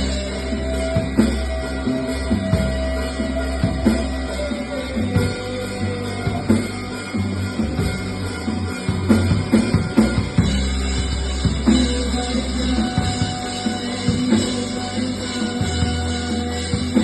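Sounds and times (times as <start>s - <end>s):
drum kit with cymbals: 0.0s - 17.0s
rock band playing live: 0.0s - 17.0s.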